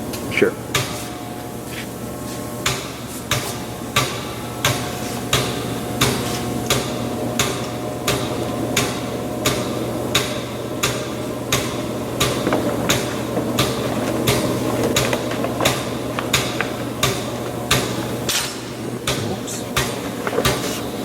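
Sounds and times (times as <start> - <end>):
grinder machine hum: 11.2 - 21.0.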